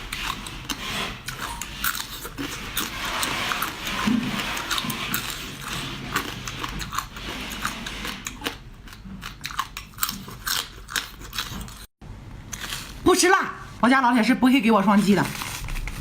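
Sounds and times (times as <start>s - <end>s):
person chewing wetly: 0.0s - 11.9s.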